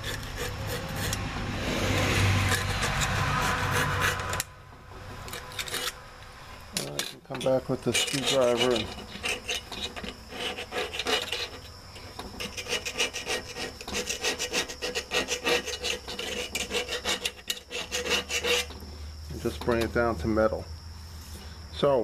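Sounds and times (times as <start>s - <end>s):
screwdriver scraping metal: 0.0s - 1.2s, 1.9s - 4.5s, 5.2s - 6.0s, 6.8s - 18.8s.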